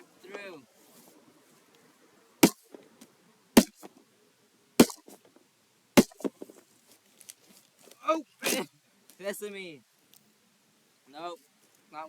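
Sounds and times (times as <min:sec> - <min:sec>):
hammer striking cardboard: 0:02.4 - 0:02.6, 0:03.6 - 0:03.9, 0:04.8 - 0:05.0, 0:06.0 - 0:06.5.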